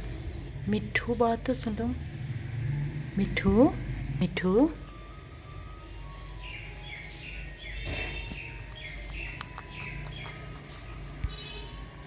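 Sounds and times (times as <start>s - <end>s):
parrot chirping: 6.1s - 12.0s.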